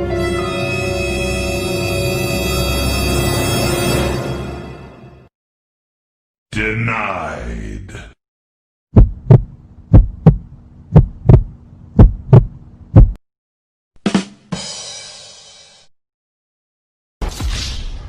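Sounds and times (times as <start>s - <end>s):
heartbeat thumps: 8.9s - 13.2s.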